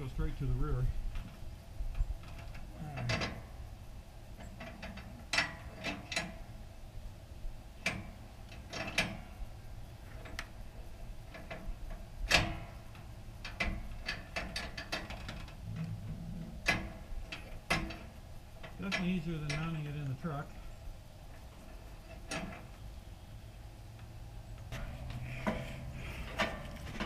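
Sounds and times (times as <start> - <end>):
strap hardware clicking and rattling: 1.1 - 3.5, 4.4 - 6.5, 7.8 - 9.4, 10.0 - 20.6, 21.3 - 22.8.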